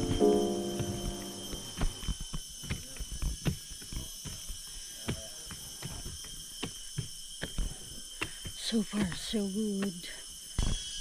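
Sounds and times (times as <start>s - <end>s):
insects droning: 0.0s - 11.0s.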